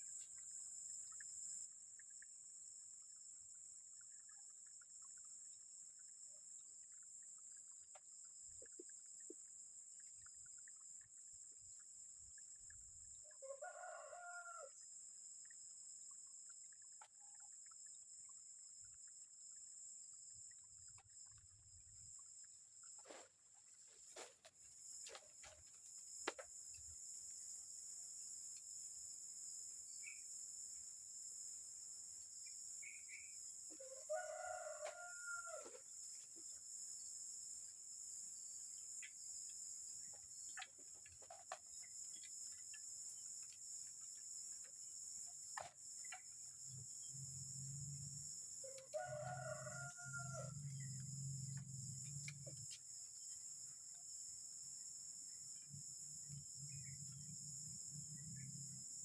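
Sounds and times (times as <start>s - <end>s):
high insect drone: 0.0s - 59.0s
rooster crowing: 13.4s - 14.8s, 33.8s - 35.8s, 48.6s - 50.7s.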